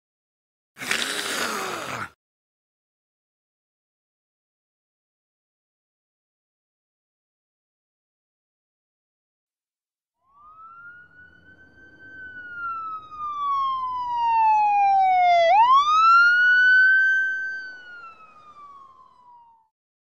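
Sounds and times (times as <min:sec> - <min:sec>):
siren-like whistling tone: 0:10.2 - 0:19.7.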